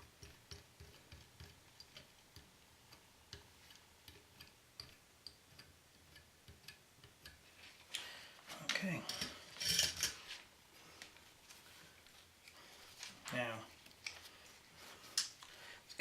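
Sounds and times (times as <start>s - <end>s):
faint ticking clicks: 0.1s - 8.1s.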